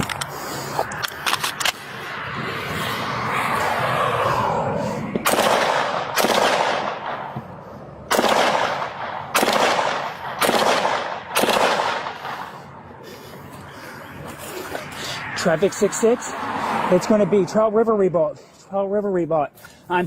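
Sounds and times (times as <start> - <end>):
gunshots with long echo: 5.2 - 7.4, 8.1 - 12.6.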